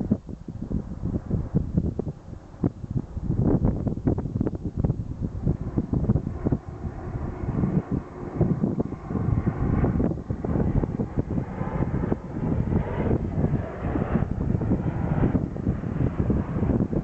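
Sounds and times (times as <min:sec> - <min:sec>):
airliner engines rumbling: 0:00.0 - 0:17.0
wind buffeting microphone: 0:00.0 - 0:17.0.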